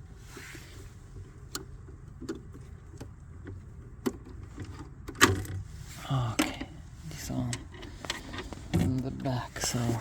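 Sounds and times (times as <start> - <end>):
low steady hum: 0.0 - 10.0
clicks of car interior parts: 1.5 - 5.6.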